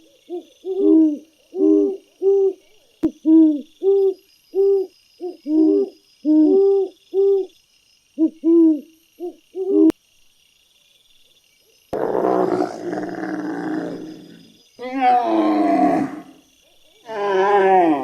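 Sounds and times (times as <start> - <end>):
animal hooting calls: 12.0 - 16.4
harsh animal call: 12.0 - 16.4.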